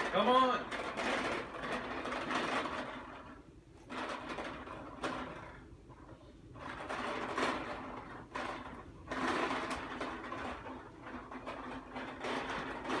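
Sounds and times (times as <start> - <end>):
toy lawnmower rattling and whirring: 6.6 - 13.0.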